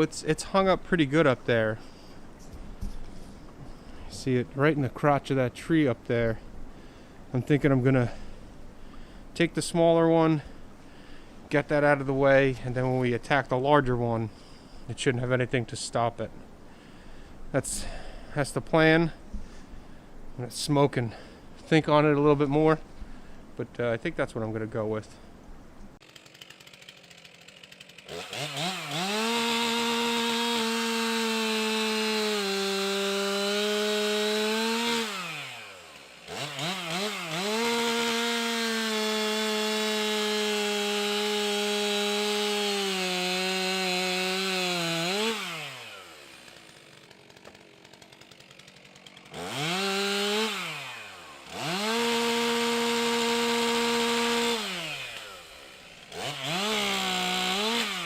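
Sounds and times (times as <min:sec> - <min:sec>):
chainsaw cutting wood: 0:00.0 - 0:05.2, 0:26.0 - 0:58.0.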